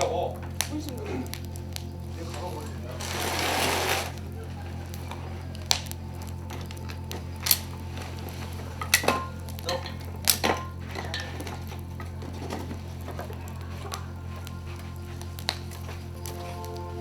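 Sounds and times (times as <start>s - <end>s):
low electrical hum: 0.0s - 17.0s.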